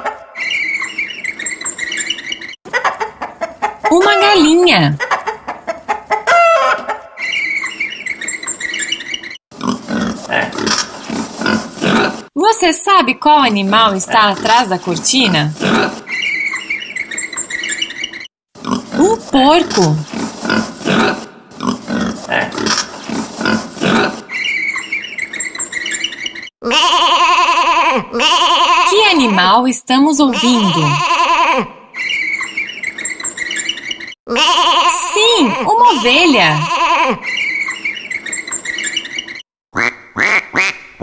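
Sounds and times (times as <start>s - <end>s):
chickens clucking: 0.0s - 8.6s
pig grunting: 9.6s - 12.3s, 15.5s - 16.1s, 18.6s - 24.3s.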